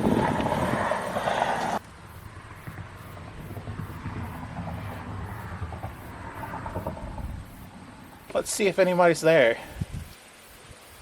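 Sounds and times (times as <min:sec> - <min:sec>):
vehicle passing by: 0:00.0 - 0:08.8.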